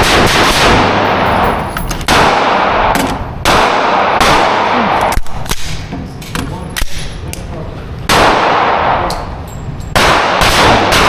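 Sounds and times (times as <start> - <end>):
rapid gunfire: 0.0 - 1.1, 2.1 - 5.8, 10.0 - 11.0
separate gunshots: 0.0 - 7.1, 8.1 - 9.1, 10.0 - 11.0.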